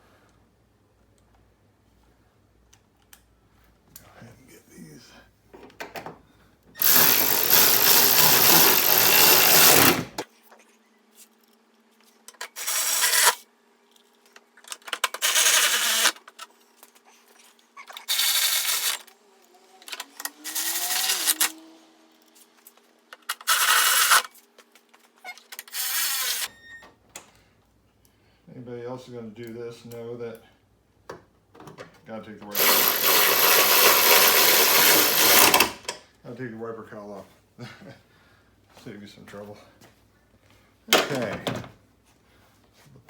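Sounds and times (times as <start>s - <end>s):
handheld power tool running: 6.8s - 10.2s, 15.2s - 16.2s, 19.8s - 21.9s, 32.5s - 35.9s.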